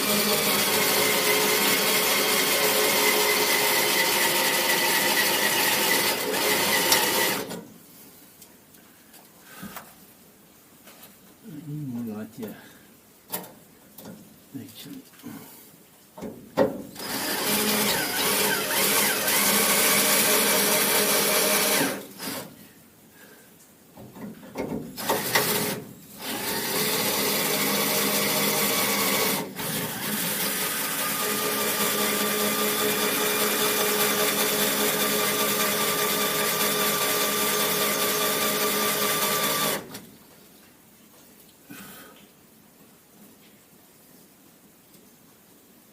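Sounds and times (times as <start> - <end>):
electric drill drilling: 0.0 - 7.6, 17.0 - 22.5, 25.0 - 40.0.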